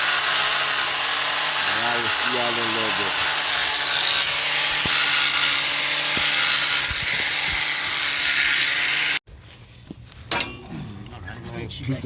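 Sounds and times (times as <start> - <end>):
power grinder grinding metal: 0.0 - 9.2.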